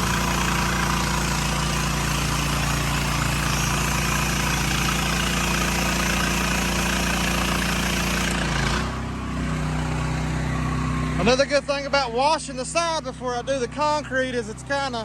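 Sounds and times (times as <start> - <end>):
water spray hissing: 0.0 - 8.9
pressure washer engine running: 0.0 - 15.0.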